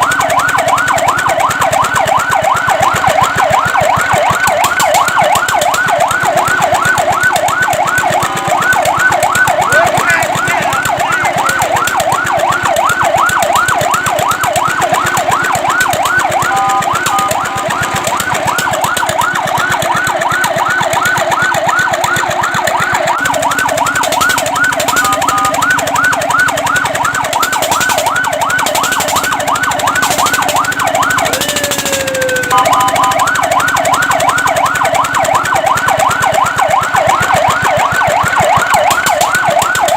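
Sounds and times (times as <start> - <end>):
siren yelping: 0.0 - 39.9
two-note siren tone: 0.0 - 39.9.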